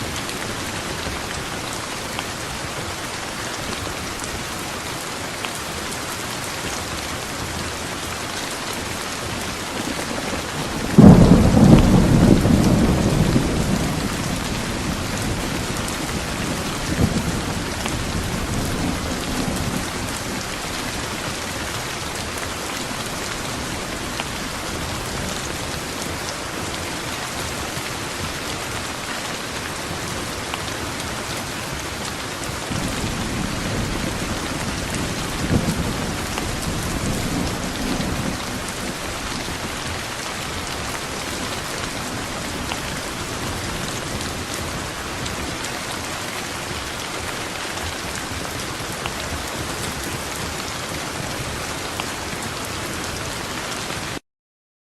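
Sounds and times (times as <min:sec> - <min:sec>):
heavy rain hissing: 0:00.0 - 0:54.1
thunder rumbling: 0:09.2 - 0:51.5.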